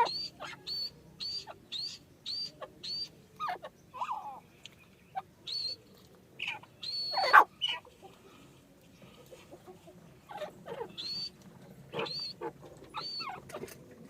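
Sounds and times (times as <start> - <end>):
francolin calling: 0.0 - 4.4, 6.4 - 7.8, 10.3 - 13.5.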